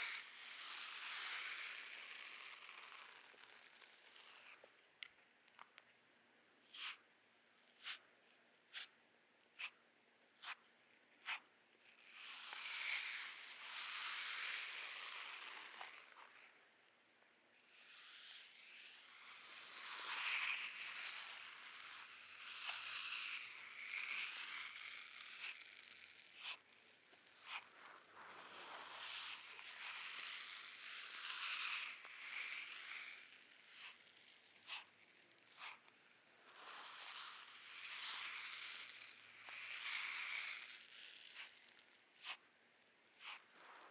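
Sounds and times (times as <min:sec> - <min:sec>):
brush scratching on skin: 0:22.0 - 0:26.6, 0:27.3 - 0:34.9, 0:35.5 - 0:35.9, 0:36.6 - 0:41.6, 0:42.2 - 0:42.4, 0:43.2 - 0:43.9.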